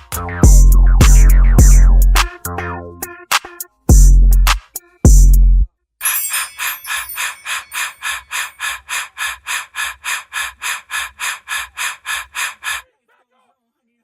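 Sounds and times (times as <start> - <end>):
electronic hip-hop music: 0.0 - 5.6
breathy panting-like beat: 0.4 - 2.3, 6.9 - 12.8
heavy bass hit: 0.4 - 2.3.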